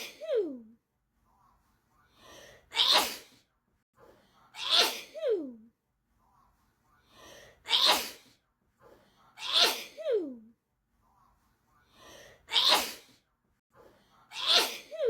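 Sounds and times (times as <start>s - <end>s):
person sneezing: 2.7s - 3.4s, 4.6s - 5.6s, 7.7s - 8.3s, 9.4s - 10.4s, 12.5s - 13.2s, 14.3s - 15.0s.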